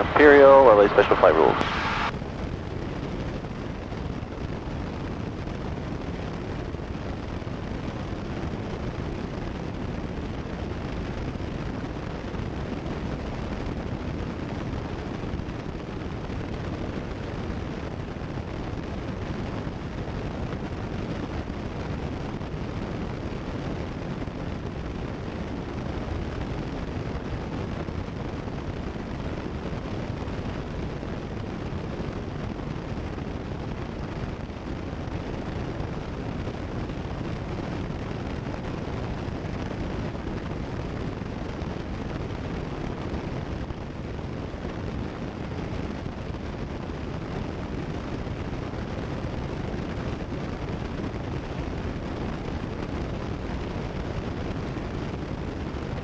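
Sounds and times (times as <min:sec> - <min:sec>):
light aircraft engine drone: 0:00.0 - 0:23.3.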